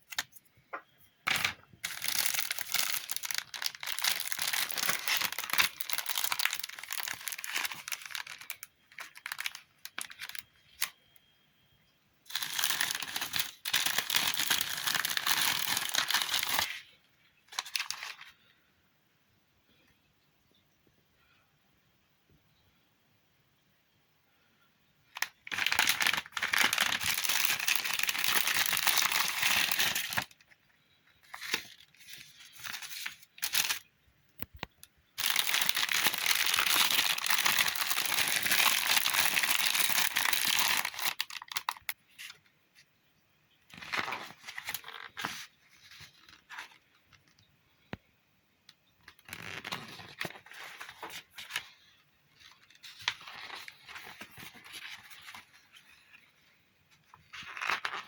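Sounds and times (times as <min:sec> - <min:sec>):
packaging tearing: 0:01.3 - 0:10.9, 0:12.3 - 0:16.8, 0:25.2 - 0:30.3, 0:32.6 - 0:33.8, 0:35.2 - 0:42.0
packaging rustling and crinkling: 0:01.3 - 0:11.0, 0:12.3 - 0:16.8, 0:17.5 - 0:18.3, 0:25.2 - 0:30.5, 0:31.3 - 0:33.9, 0:35.2 - 0:42.4.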